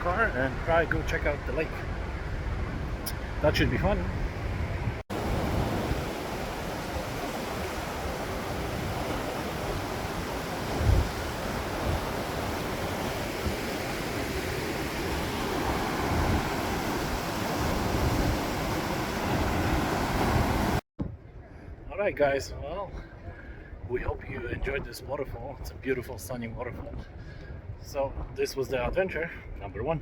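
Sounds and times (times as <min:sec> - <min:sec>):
wind on microphone: 0:01.7 - 0:21.8, 0:23.2 - 0:30.0
waterfall roaring: 0:05.1 - 0:20.8.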